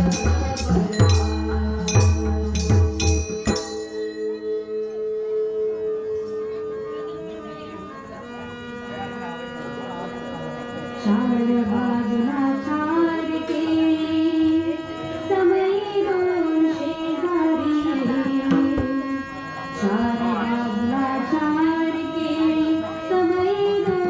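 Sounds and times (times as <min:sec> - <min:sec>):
hand drum strokes: 0:00.0 - 0:04.1, 0:18.0 - 0:19.2
harmonium melody: 0:00.0 - 0:24.0.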